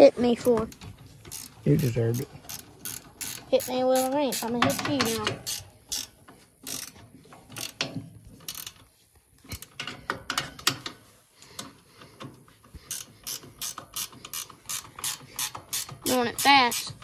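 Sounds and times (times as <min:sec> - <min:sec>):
ratchet wrench clicking: 0:00.7 - 0:07.0, 0:07.6 - 0:08.8, 0:12.9 - 0:17.0.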